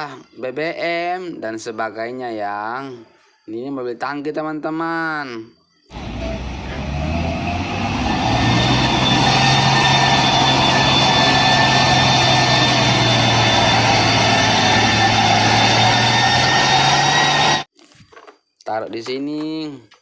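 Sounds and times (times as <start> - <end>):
toy truck motor humming and whining: 5.9 - 17.7.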